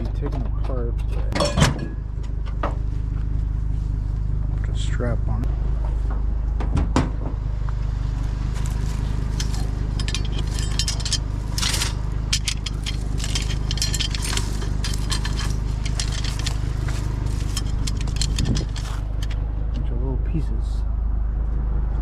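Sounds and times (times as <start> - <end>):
steady low hum: 0.0 - 21.3
scrap metal clinking and scraping: 1.1 - 2.1, 8.4 - 19.5.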